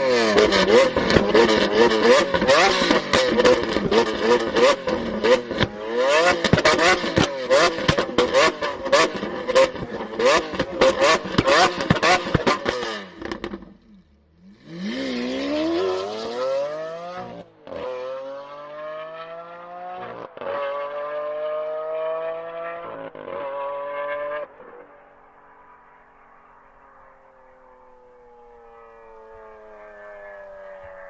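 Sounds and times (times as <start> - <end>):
car engine accelerating: 0.0 - 31.0.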